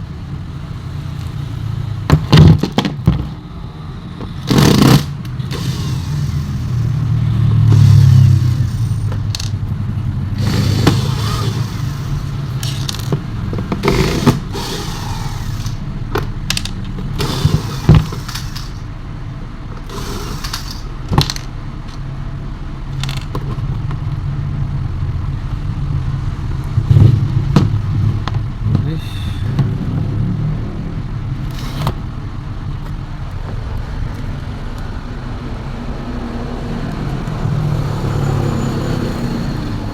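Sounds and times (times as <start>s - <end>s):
steady low hum: 3.0s - 36.2s
fan parts and tools handled: 10.4s - 18.9s.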